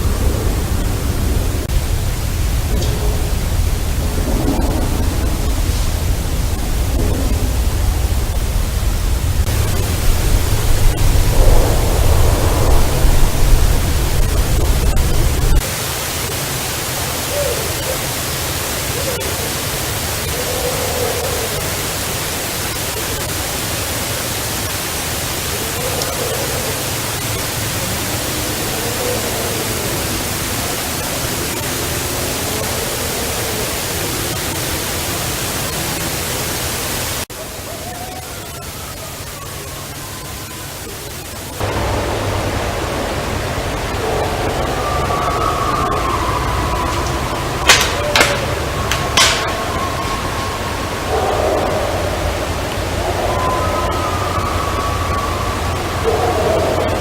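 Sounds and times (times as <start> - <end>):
deep rumble: 0.0 - 15.7
recording hiss: 0.0 - 57.0
wavering drawn-out calls: 2.5 - 42.0, 43.6 - 57.0.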